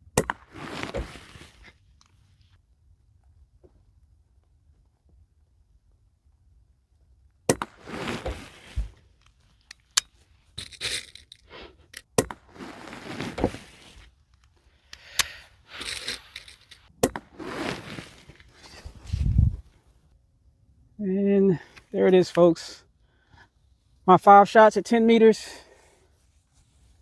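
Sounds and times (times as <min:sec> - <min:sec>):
pump lever and bolt clattering: 0:09.9 - 0:12.4, 0:15.0 - 0:17.2.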